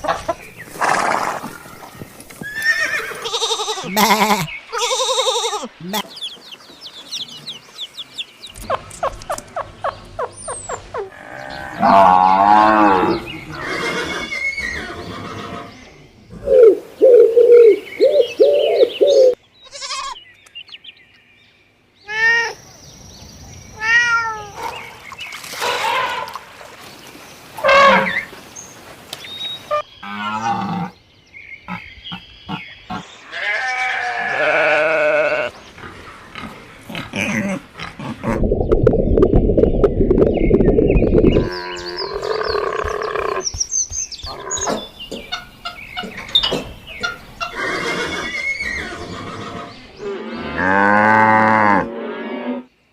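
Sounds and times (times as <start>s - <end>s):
farm animals calling: 0.0s - 6.4s, 7.1s - 20.2s, 27.6s - 28.3s, 29.6s - 31.0s, 31.6s - 38.4s, 41.0s - 52.7s.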